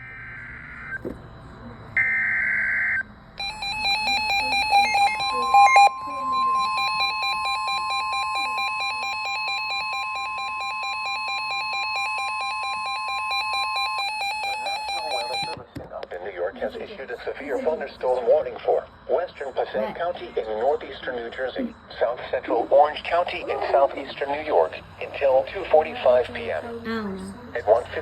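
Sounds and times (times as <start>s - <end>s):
rapidly pulsing alarm beep: 0.0s - 15.6s
steady warning alarm tone: 0.0s - 15.6s
warbling digital data tones: 2.0s - 15.6s.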